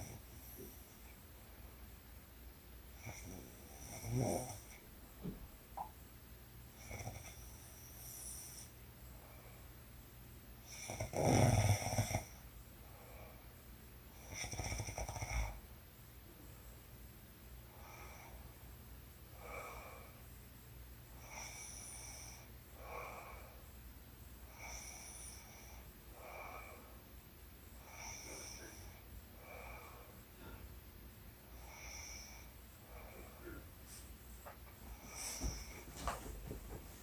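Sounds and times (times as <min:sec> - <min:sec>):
woman snoring softly: 0:03.0 - 0:04.8, 0:06.8 - 0:08.7, 0:10.6 - 0:12.4, 0:14.2 - 0:15.6, 0:21.2 - 0:23.5, 0:24.5 - 0:26.9, 0:27.8 - 0:30.6, 0:31.5 - 0:33.7.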